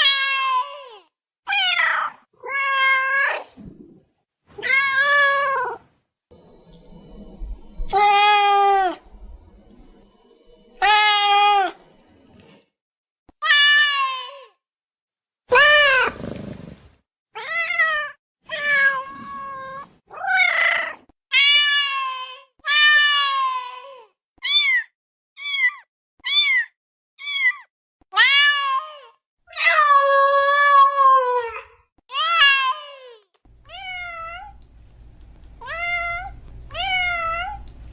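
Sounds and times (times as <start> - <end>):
cat meowing: 33.6 - 34.6, 35.6 - 37.7.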